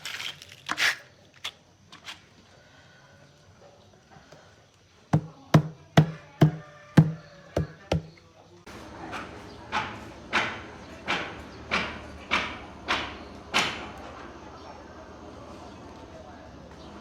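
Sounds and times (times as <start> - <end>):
sharp knocks with dull thud: 5.2 - 8.1.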